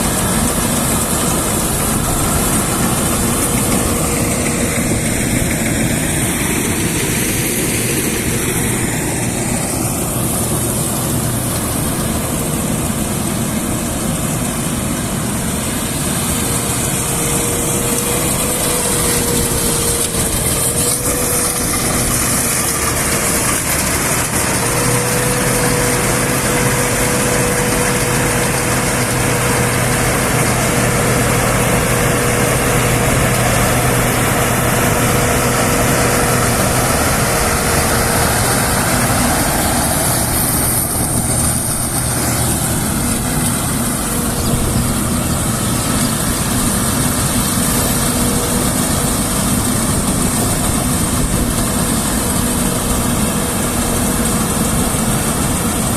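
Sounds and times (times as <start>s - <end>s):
combine harvester engine drone: 0.0s - 55.9s
steady machinery whine: 0.0s - 55.9s.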